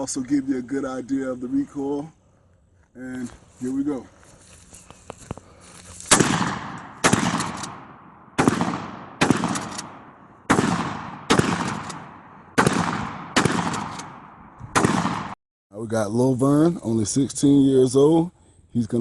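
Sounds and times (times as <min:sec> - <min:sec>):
gunshot echo: 0:06.1 - 0:15.4
loud shotgun shots: 0:06.1 - 0:15.4.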